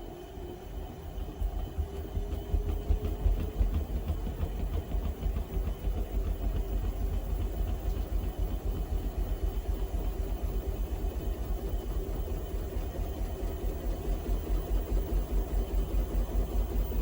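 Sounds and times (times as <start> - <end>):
washing machine rumbling: 1.2 - 14.2.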